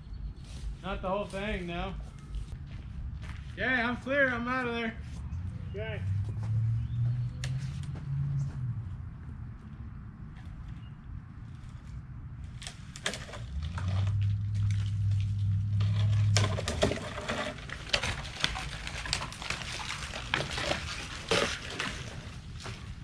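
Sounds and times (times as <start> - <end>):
steady low hum: 0.0 - 17.3
tree breaking through branches: 12.4 - 23.0
wood cracking and snapping: 12.5 - 23.0.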